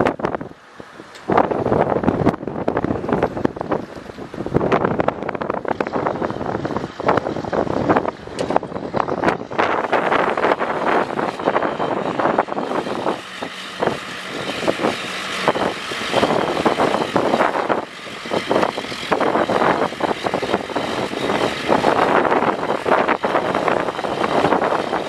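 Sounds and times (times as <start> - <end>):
loader diesel engine: 5.1 - 25.0.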